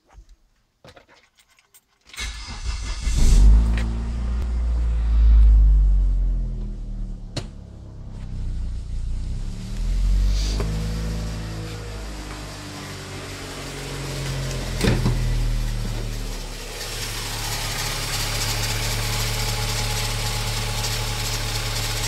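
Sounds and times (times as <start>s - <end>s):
car engine starting and revving: 2.2s - 22.0s.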